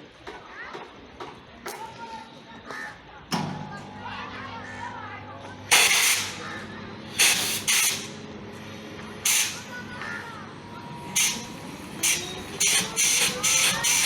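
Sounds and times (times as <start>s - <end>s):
compressed air hisses: 5.7s - 6.4s, 7.1s - 8.2s, 9.2s - 9.7s, 11.2s - 14.0s.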